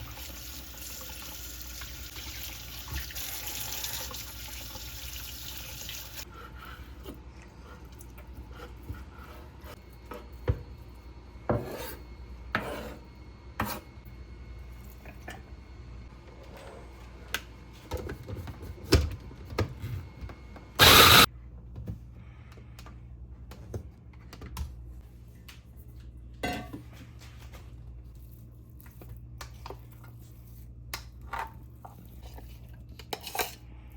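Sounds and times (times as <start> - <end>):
kitchen tap running into sink: 0.0 - 6.2.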